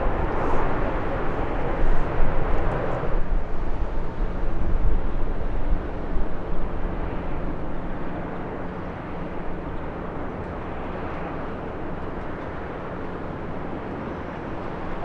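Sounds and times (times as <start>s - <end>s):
jet engine rumble: 0.0s - 8.4s.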